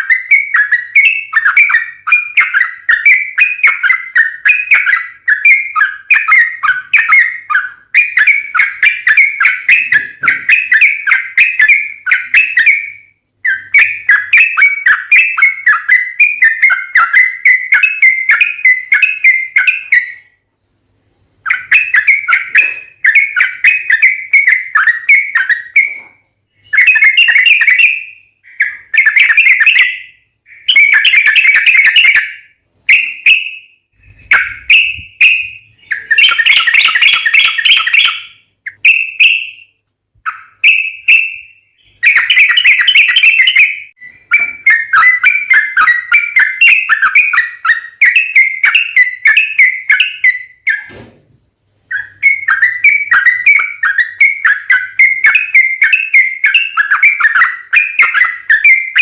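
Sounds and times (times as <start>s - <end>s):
fast chattering bird notes: 0.0s - 12.8s, 21.5s - 26.1s, 30.6s - 33.4s, 34.0s - 39.4s, 42.0s - 50.8s, 51.9s - 59.0s.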